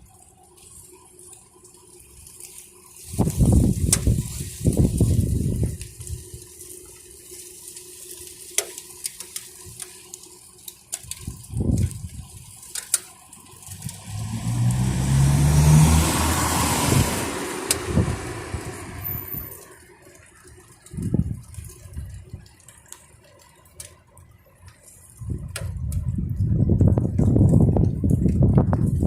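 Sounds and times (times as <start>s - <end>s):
tyres hissing on wet road: 0.0s - 25.7s
vehicle engine hum: 0.0s - 29.0s
wind buffeting microphone: 3.1s - 6.4s, 11.1s - 12.4s, 13.7s - 19.1s, 20.9s - 22.5s, 25.2s - 29.0s.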